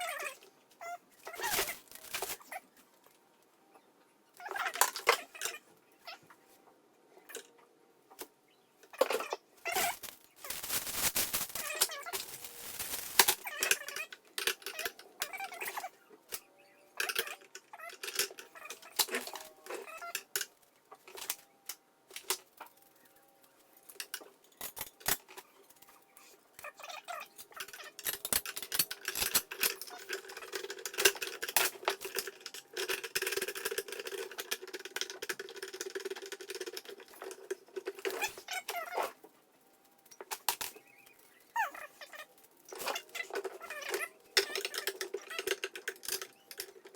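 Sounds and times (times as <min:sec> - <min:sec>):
rustling of parts: 0:00.0 - 0:03.2, 0:08.9 - 0:46.9
clicks and knocks of parts: 0:07.2 - 0:22.9, 0:23.5 - 0:26.0, 0:26.6 - 0:46.9.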